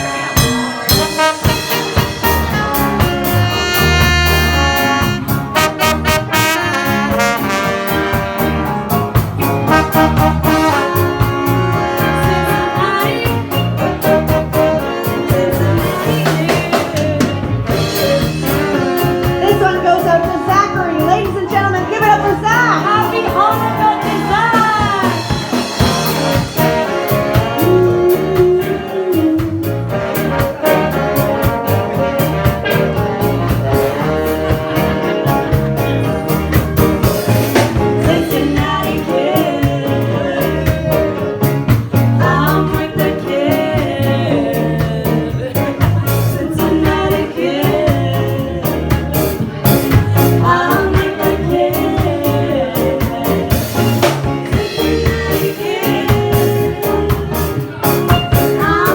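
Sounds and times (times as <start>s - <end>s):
live band playing: 0.0s - 58.9s
steady drum beat: 0.0s - 58.9s
person singing: 11.9s - 30.9s, 37.9s - 58.9s.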